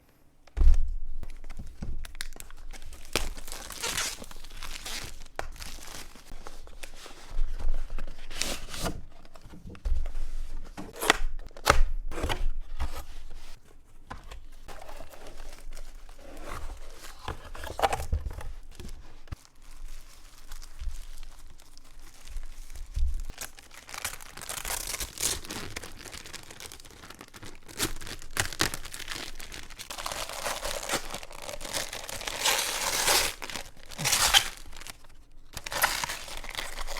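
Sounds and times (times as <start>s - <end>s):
cardboard and plastic tearing: 1.5s - 7.0s, 14.2s - 22.6s, 23.2s - 36.9s.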